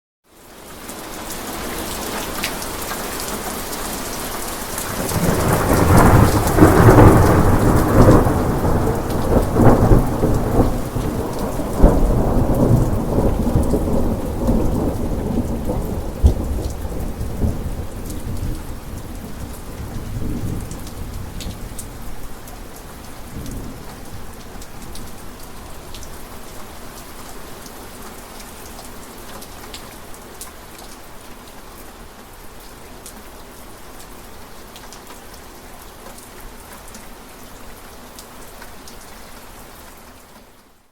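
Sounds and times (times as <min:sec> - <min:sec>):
steady rain falling: 0:00.2 - 0:40.9
thunder rumbling: 0:04.9 - 0:22.1.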